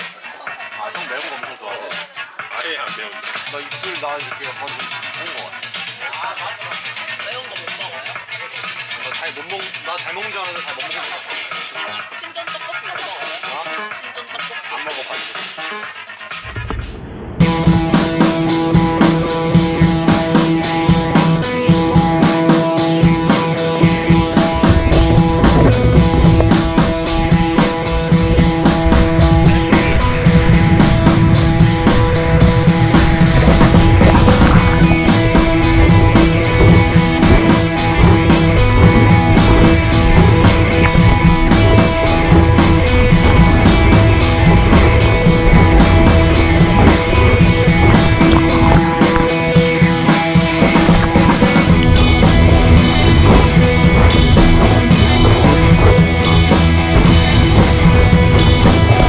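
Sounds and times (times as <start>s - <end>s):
rock music with drums and guitar: 17.4s - 59.0s.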